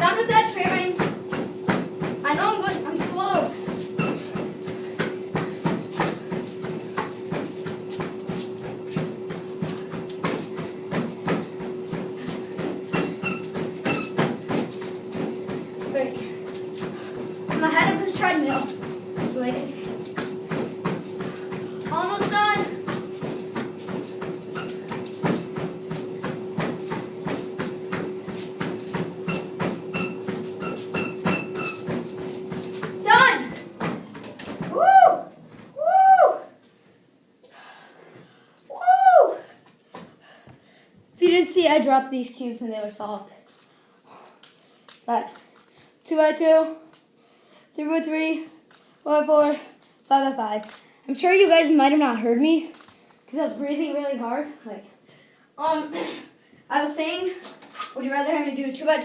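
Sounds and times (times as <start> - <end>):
footfalls on treadmill belt: 0.0 - 36.8, 39.2 - 41.6, 57.0 - 58.7
treadmill motor hum: 0.0 - 59.0.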